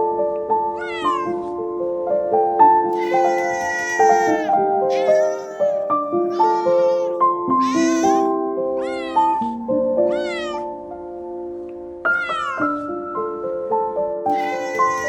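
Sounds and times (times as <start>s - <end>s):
background music with held notes: 0.0s - 15.0s
cat meowing: 0.8s - 1.5s, 2.9s - 9.5s, 10.1s - 10.8s, 12.1s - 12.9s, 14.3s - 15.0s.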